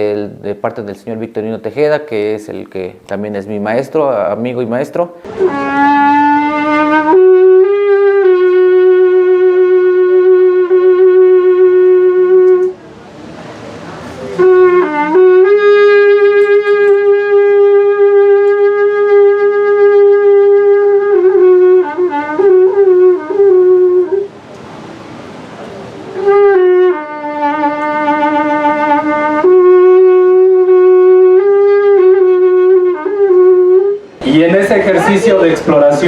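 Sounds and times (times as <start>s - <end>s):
wind horn long held notes: 5.3s - 12.8s, 14.1s - 24.4s, 25.9s - 34.1s.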